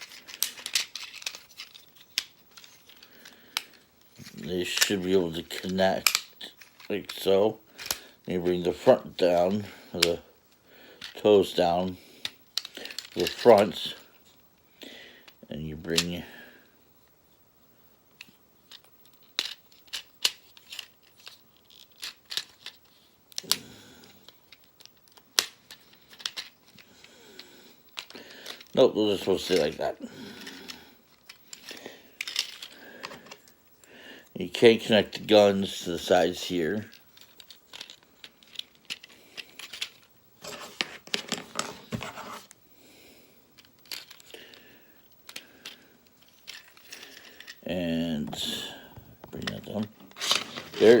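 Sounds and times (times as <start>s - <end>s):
plastic toy parts clicking and snapping: 0.0s - 3.8s, 5.6s - 7.2s, 12.2s - 13.5s, 18.2s - 23.6s, 24.2s - 26.9s, 27.9s - 28.7s, 30.5s - 33.5s, 37.2s - 40.1s, 43.6s - 44.4s.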